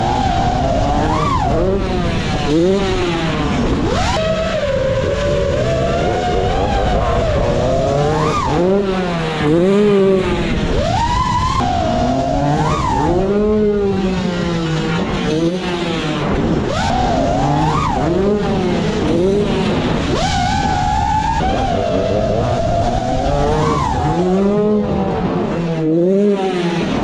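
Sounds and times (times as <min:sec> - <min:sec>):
drone motors whining: 0:04.3 - 0:14.6.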